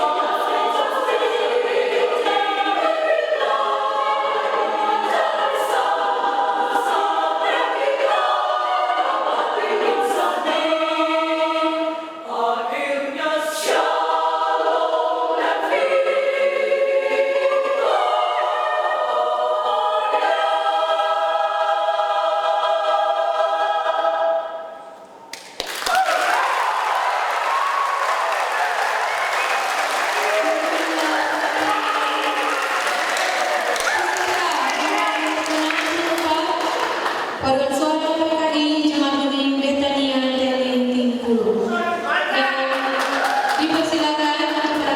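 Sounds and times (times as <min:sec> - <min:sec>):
women's choir singing: 0:00.0 - 0:25.3, 0:26.6 - 0:41.7
applause: 0:25.3 - 0:37.4, 0:42.7 - 0:44.9.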